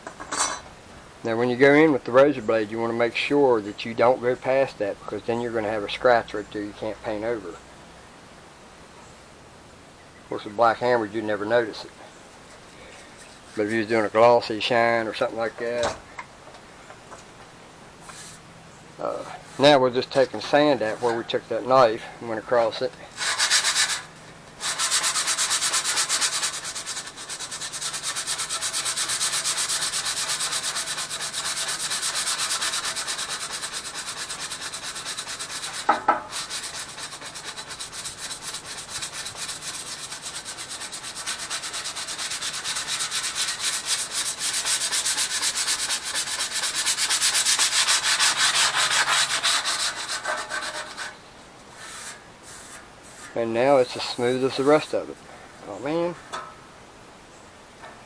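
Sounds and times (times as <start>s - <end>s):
sandpaper rubbing on plastic: 23.1s - 54.9s.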